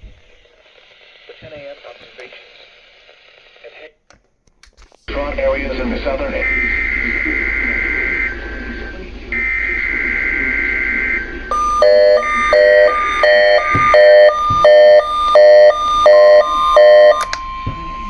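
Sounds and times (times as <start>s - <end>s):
two-note electronic beep alarm: 6.3s - 18.0s.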